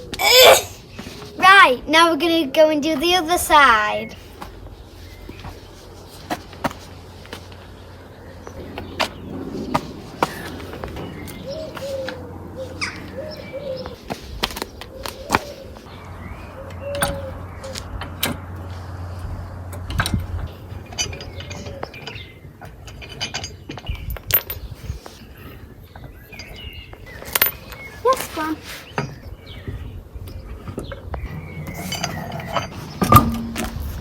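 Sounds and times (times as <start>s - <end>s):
birds chirping: 0.0s - 34.0s
clicks and knocks of metal tools: 20.9s - 24.7s, 27.2s - 28.2s
low steady hum: 29.2s - 34.0s.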